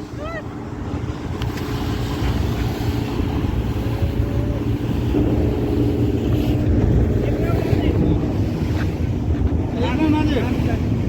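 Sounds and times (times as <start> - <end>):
motorboat engine droning: 0.0 - 11.0.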